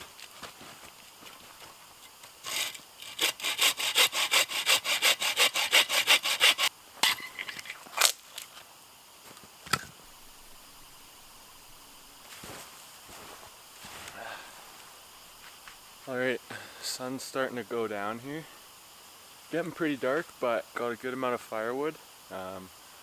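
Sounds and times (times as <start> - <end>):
hand saw cutting wood: 2.4 - 6.7.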